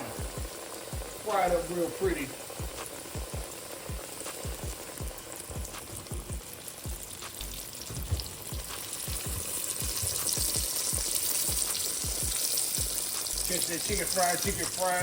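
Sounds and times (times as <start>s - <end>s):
chicken frying in hot oil: 0.0s - 15.0s
low thumping beat: 0.0s - 15.0s.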